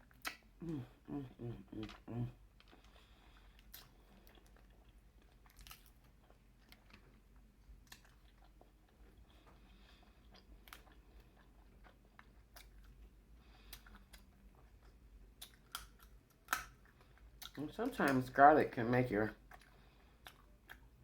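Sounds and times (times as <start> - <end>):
faint chewing: 0.0 - 18.4, 19.2 - 21.0
wet mouth clicks and smacks: 0.1 - 0.5.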